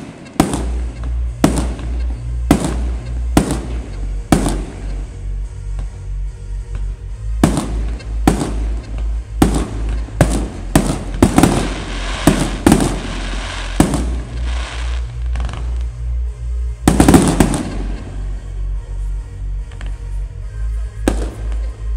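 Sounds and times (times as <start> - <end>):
fireworks bangs: 0.0 - 5.2, 7.4 - 15.9, 16.8 - 18.2
fireworks crackling: 0.0 - 5.4, 7.4 - 16.1, 16.8 - 18.4
music with heavy bass: 0.0 - 21.9.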